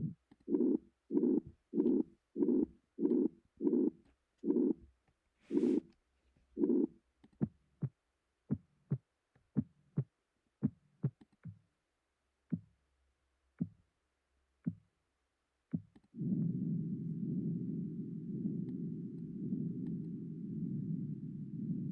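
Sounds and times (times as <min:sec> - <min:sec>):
steady low rumble: 0:16.2 - 0:21.9.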